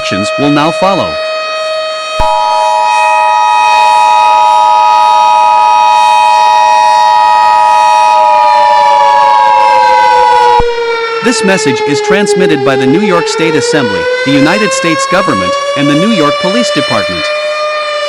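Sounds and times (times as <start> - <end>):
civil defense siren wailing: 0.0 - 18.0
two-tone alert signal: 2.1 - 5.4.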